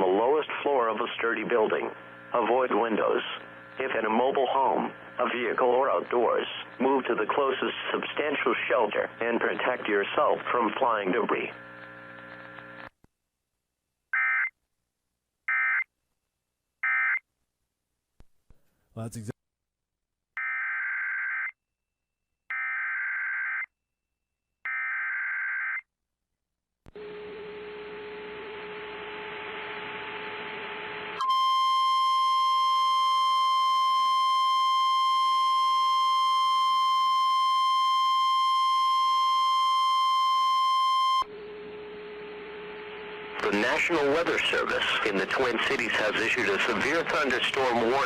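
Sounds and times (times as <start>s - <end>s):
radio static with low hum: 0.0s - 12.9s, 41.3s - 48.0s.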